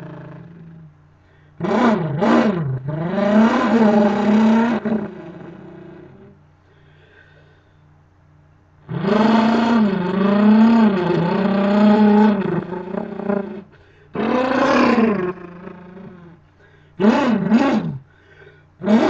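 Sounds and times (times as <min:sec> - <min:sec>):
person imitating car engine revs: 0:00.0 - 0:00.9, 0:01.6 - 0:06.3, 0:08.9 - 0:16.4, 0:17.0 - 0:18.1, 0:18.8 - 0:19.0.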